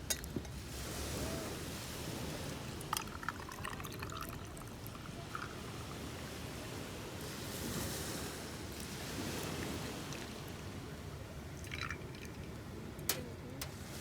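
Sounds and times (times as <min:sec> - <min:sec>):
liquid pouring: 0:02.7 - 0:06.1, 0:11.6 - 0:12.5.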